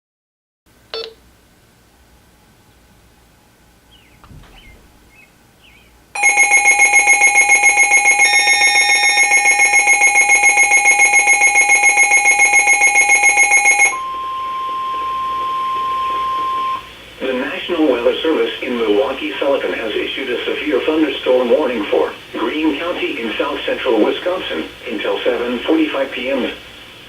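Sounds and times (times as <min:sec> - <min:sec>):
weather radio alert beeps: 0:06.2 - 0:17.5
steady warning alarm tone: 0:06.2 - 0:19.6.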